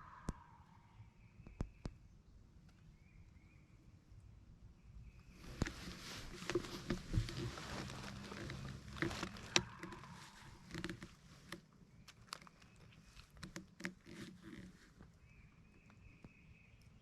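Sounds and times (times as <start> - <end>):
gun handling clicks and rustling: 5.4 - 15.1.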